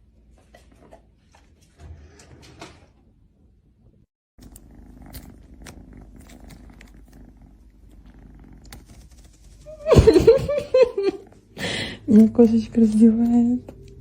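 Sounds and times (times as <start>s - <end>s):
cat purring: 4.4s - 14.0s.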